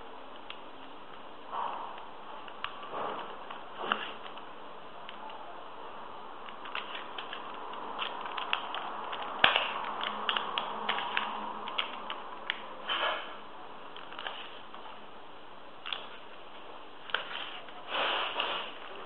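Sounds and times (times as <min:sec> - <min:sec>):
plastic cube layers clicking: 0:06.5 - 0:12.7.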